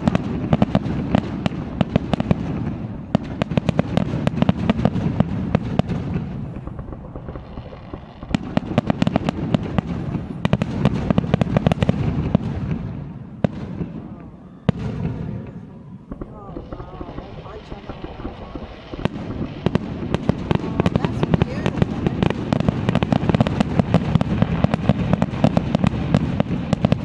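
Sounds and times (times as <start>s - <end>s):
fireworks bangs and crackles: 0.0s - 27.0s.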